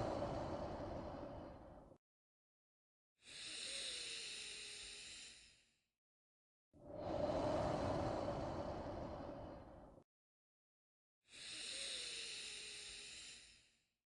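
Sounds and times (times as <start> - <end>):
slow paced breathing: 0.0 - 2.0, 3.2 - 5.4, 6.8 - 10.0.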